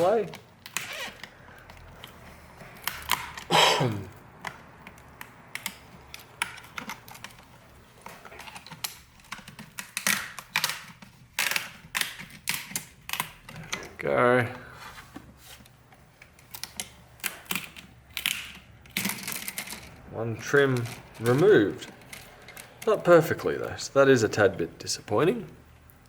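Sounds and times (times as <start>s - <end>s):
plastic trim clicking and snapping: 8.4s - 14.0s.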